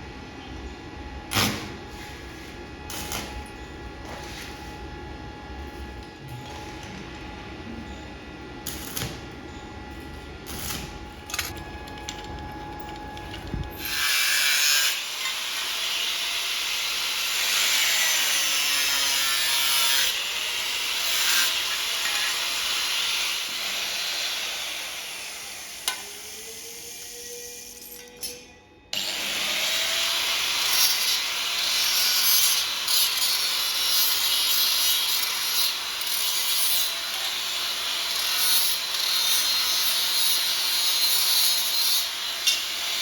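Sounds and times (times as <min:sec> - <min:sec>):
power tool scraping metal: 0:10.5 - 0:28.4, 0:29.0 - 0:43.0.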